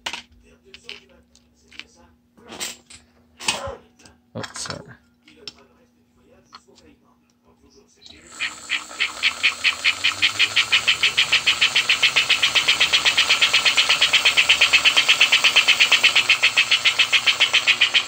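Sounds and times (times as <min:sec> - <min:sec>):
model train smoke unit chuffing: 0:08.2 - 0:18.0.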